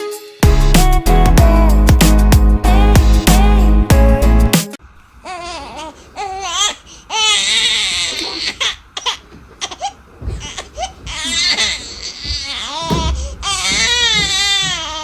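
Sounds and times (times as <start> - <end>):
small child crying: 5.2 - 15.0.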